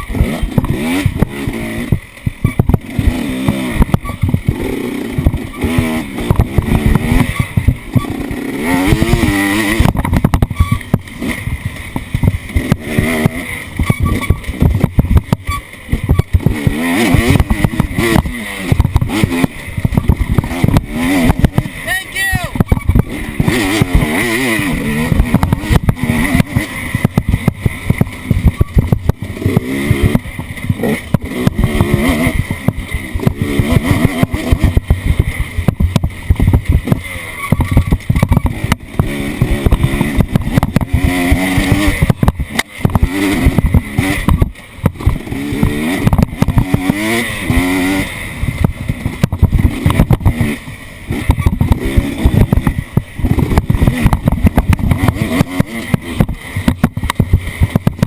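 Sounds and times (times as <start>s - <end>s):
knocks and thumps: 0.0s - 4.6s, 5.2s - 21.8s, 25.0s - 47.6s, 48.5s - 50.5s, 51.1s - 58.0s
off-road vehicle engine revving: 0.0s - 58.0s.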